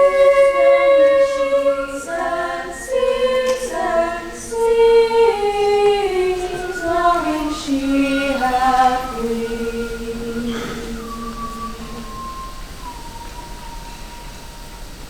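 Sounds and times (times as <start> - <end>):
treble choir singing unaccompanied: 0.0 - 15.0.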